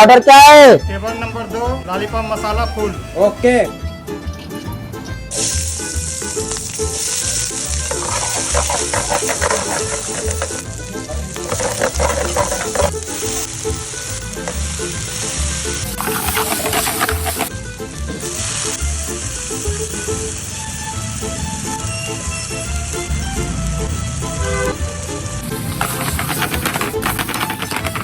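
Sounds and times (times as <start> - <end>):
stirring scraping clicks: 5.3 - 17.6, 24.6 - 28.0
chicken sizzling in hot oil: 5.3 - 28.0.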